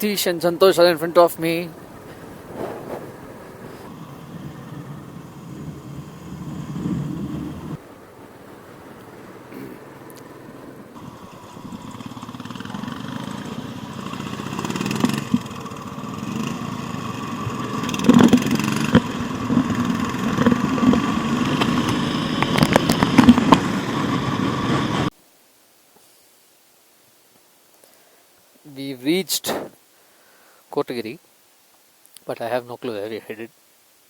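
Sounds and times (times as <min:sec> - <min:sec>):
motorcycle engine running: 0:03.4 - 0:25.1.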